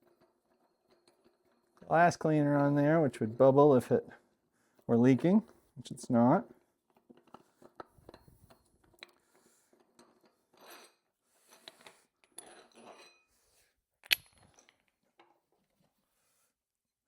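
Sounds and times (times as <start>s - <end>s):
metallic clink: 14.0s - 14.8s.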